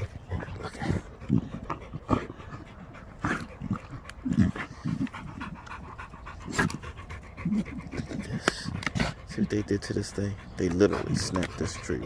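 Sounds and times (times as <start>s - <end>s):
dogs panting: 0.0s - 12.0s.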